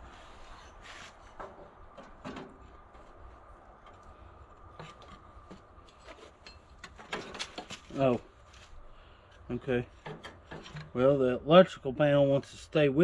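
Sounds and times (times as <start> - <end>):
faint steady hum: 0.0 - 13.0
hand tools and metal parts clinking: 3.8 - 8.7, 9.3 - 11.0.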